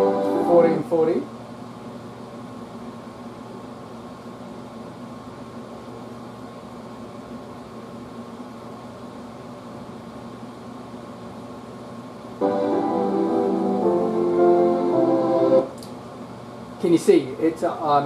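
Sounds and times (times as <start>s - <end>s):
piano music: 0.0s - 0.9s, 12.4s - 15.7s
air conditioner humming: 0.0s - 18.0s.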